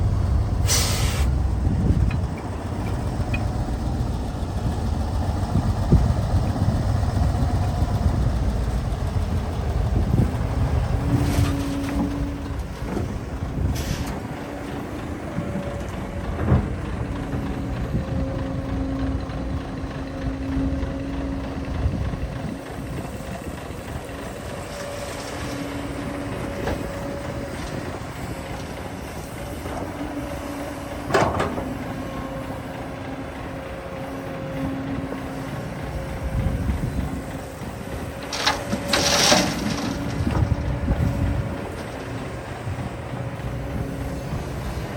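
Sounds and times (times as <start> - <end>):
excavator diesel engine whining: 0.0 - 44.9.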